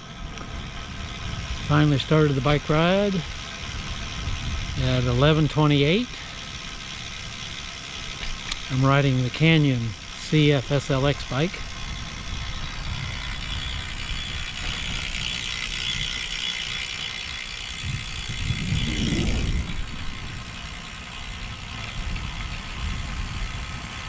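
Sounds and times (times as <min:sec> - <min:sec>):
bicycle freewheel clicking: 0:00.0 - 0:24.0
wind and road noise: 0:00.0 - 0:24.0
low rumble: 0:17.7 - 0:22.1.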